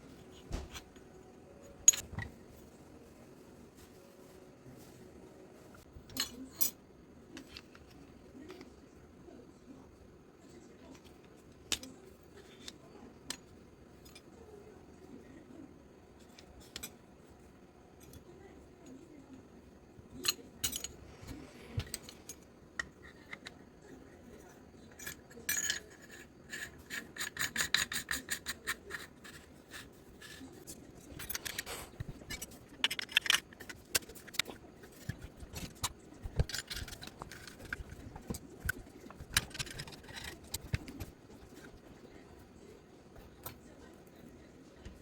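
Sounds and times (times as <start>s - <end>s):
metal parts clicking and rattling: 24.9s - 41.9s.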